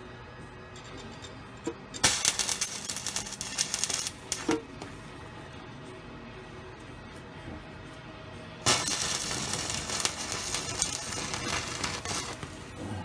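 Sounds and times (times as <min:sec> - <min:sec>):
welding arc crackling and sizzling: 0:02.0 - 0:05.2, 0:08.6 - 0:13.0.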